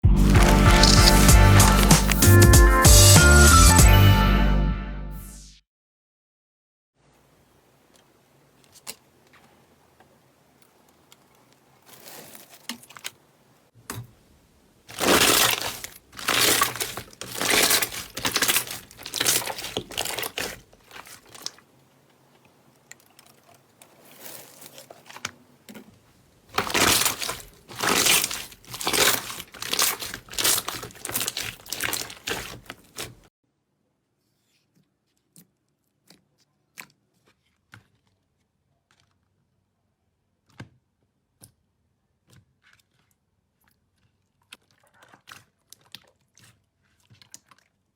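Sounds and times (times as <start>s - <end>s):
hands squishing crackling slime: 0.2s - 2.8s, 14.9s - 21.7s, 26.5s - 33.3s.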